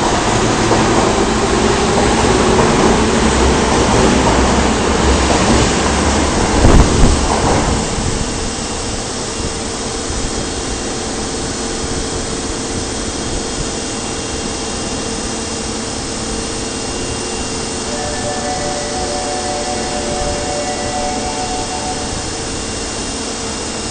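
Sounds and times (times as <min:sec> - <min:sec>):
train running rushing noise: 0:00.0 - 0:12.2, 0:15.7 - 0:23.9
faint held tone: 0:17.8 - 0:23.2
higher tones: 0:17.8 - 0:23.5.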